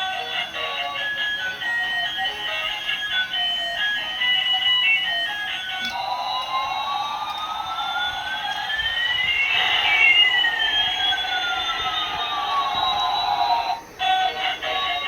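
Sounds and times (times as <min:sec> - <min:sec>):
electronic tones sweeping: 0:05.8 - 0:14.4
steady low hum: 0:05.8 - 0:15.0.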